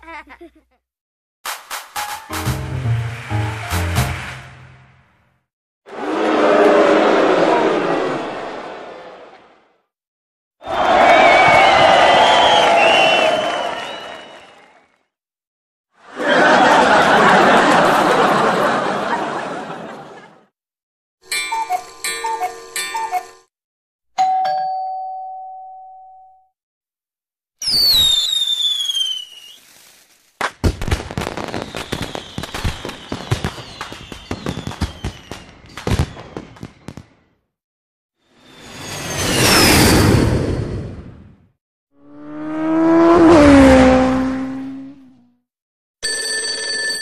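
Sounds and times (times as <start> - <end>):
high falling whistles: 10.6 - 14.6, 27.6 - 30.0, 31.2 - 37.3, 38.2 - 41.0
doorbell-like chime: 24.2 - 26.5.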